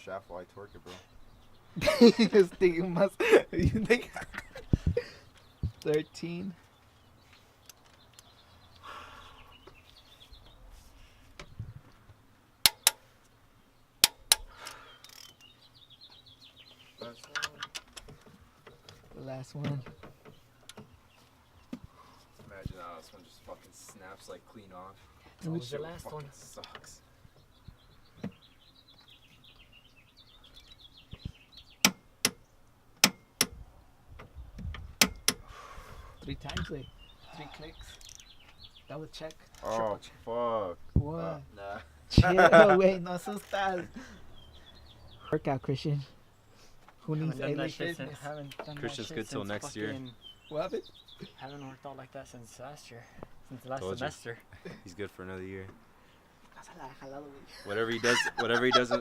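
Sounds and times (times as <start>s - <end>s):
torque wrench clicking: 12.6s - 13.0s, 14.0s - 15.5s
torque wrench clicks: 12.6s - 13.0s.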